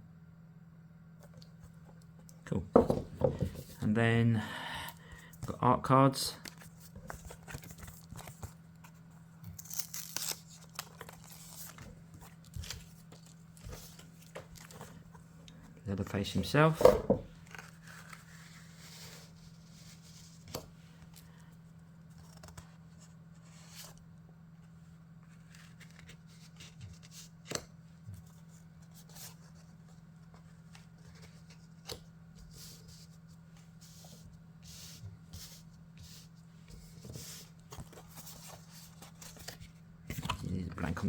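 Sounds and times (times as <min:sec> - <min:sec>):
cards being handled: 0:06.4 - 0:15.0.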